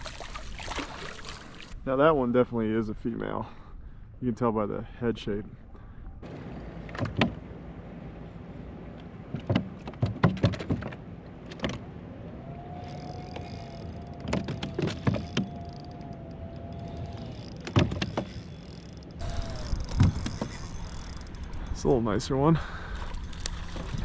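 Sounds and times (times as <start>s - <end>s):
gear knocking in plastic kayak: 9.3s - 11.8s, 12.9s - 21.6s.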